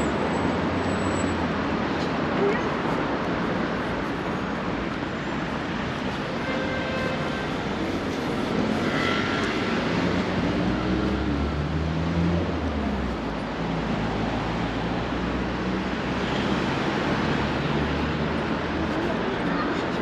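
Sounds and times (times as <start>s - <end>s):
rush of passing vehicles: 0.0s - 20.0s.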